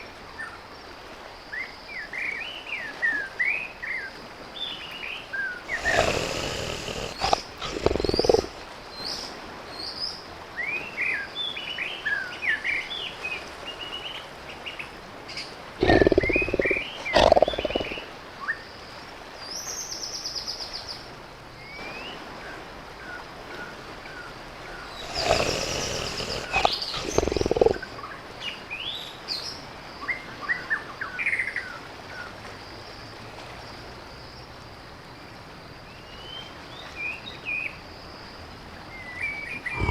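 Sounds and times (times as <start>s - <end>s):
small birds chirping: 5.6s - 8.5s, 15.8s - 18.0s, 24.8s - 27.8s, 39.5s - 39.9s
high insect drone: 5.7s - 8.5s, 15.8s - 17.9s, 25.0s - 27.9s
tiger roaring: 5.7s - 8.5s, 15.8s - 18.0s, 25.0s - 27.8s.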